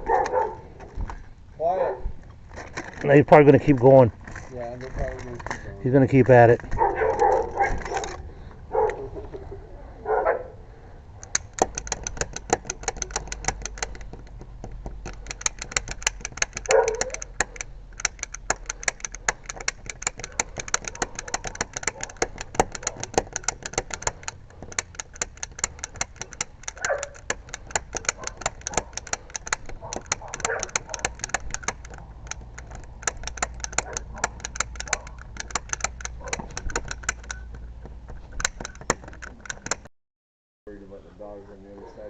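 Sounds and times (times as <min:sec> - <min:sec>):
dogs barking: 0:00.0 - 0:00.7, 0:01.7 - 0:02.2, 0:06.6 - 0:10.6, 0:16.6 - 0:17.2, 0:26.8 - 0:27.2, 0:28.0 - 0:29.0, 0:29.7 - 0:31.2, 0:33.8 - 0:35.2, 0:36.2 - 0:36.5
lock picks clicking in lock: 0:02.6 - 0:08.2, 0:11.2 - 0:39.9.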